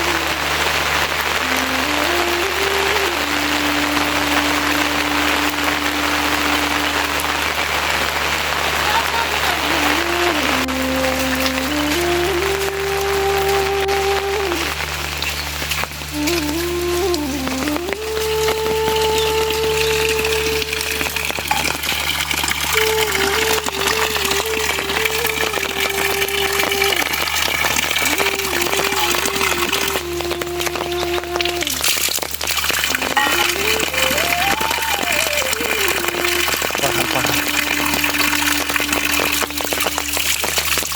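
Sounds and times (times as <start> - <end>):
rushing water: 0.0 - 40.9
slow melody of long held notes: 0.0 - 40.9
steady rain hiss: 0.0 - 40.9
thin melody of held notes: 32.9 - 40.2.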